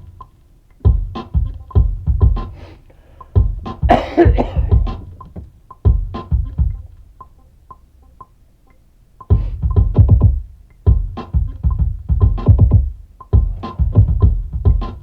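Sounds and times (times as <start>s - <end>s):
drum-machine ticks: 0.0s - 2.6s, 3.2s - 15.0s
bass-heavy kicks and percussion: 0.8s - 2.6s, 3.4s - 7.0s, 9.3s - 15.0s.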